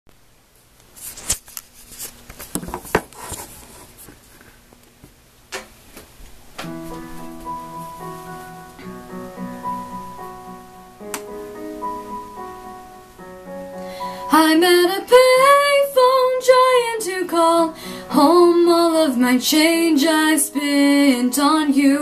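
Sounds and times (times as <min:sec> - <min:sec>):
piano chords: 0:06.6 - 0:22.0.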